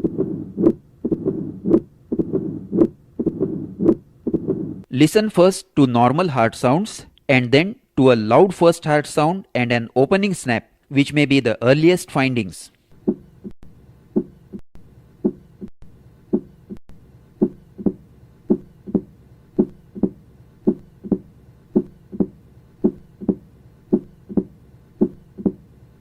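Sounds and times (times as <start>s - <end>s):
heartbeat through stethoscope: 0.0s - 4.9s, 13.0s - 13.5s, 14.1s - 14.6s, 15.2s - 16.8s, 17.4s - 25.7s.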